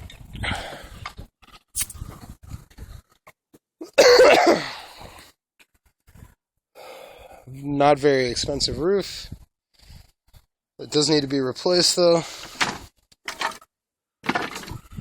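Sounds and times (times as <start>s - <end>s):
person coughing: 4.0s - 4.8s.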